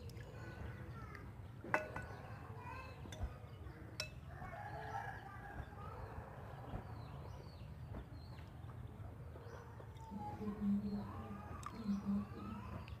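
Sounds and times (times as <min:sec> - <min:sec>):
faint bird calls: 0:09.3 - 0:13.0.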